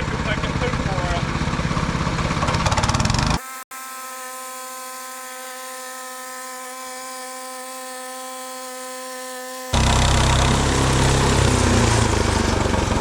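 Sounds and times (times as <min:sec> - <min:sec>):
small engine running loudly: 0:00.0 - 0:13.0
steady motor hum: 0:04.7 - 0:13.0.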